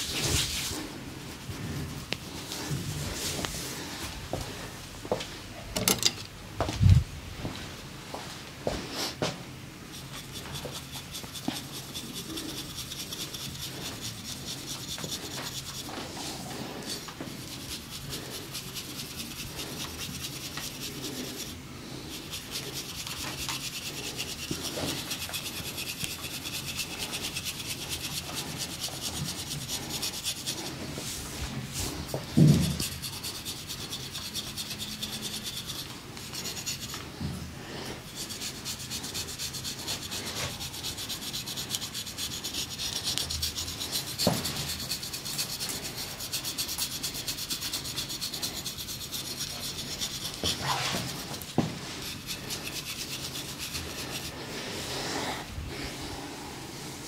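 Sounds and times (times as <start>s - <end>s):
hands rubbing over skin: 0.0s - 4.2s.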